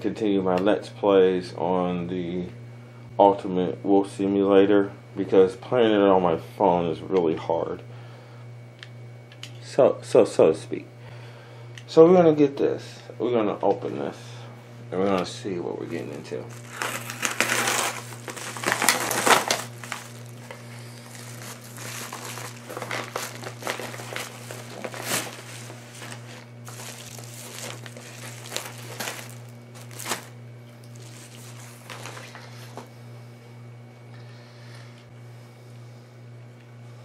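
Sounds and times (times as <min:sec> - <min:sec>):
low electrical hum: 0:00.0 - 0:37.0
packaging crinkling and rustling: 0:15.9 - 0:32.9.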